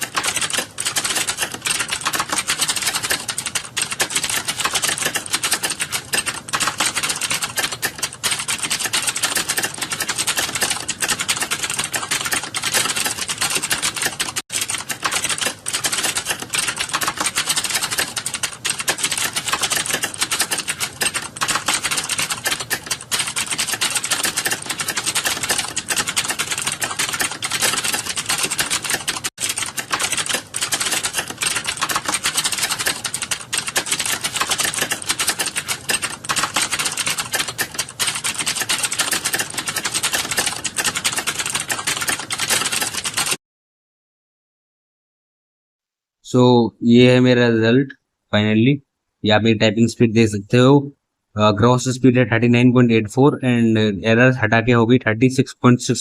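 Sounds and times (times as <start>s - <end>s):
fast keyboard typing: 0.0s - 43.4s.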